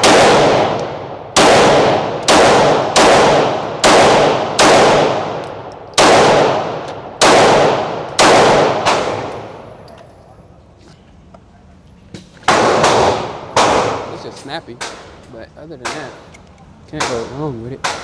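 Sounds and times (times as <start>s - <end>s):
pistol shots echoing: 0.0s - 9.8s, 12.5s - 15.2s, 15.8s - 16.3s, 17.0s - 18.0s.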